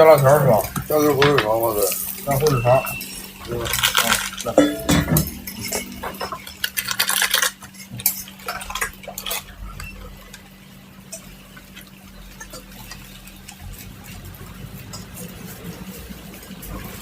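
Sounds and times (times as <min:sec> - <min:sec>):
metal utensils scraping a pan: 0:00.2 - 0:09.4
steady low hum: 0:04.3 - 0:06.8.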